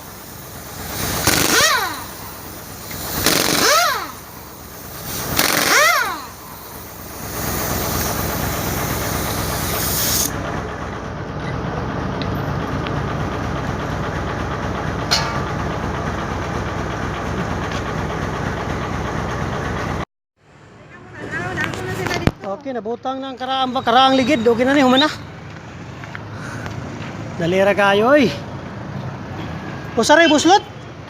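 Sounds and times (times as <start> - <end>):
hiss: 0.0 - 10.4
mechanical rumble: 0.0 - 20.0.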